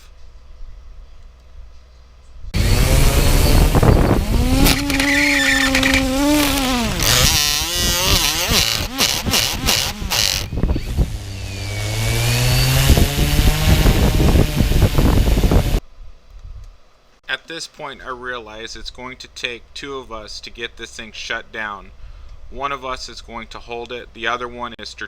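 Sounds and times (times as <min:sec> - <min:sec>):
drone motors whining: 0:02.6 - 0:15.8.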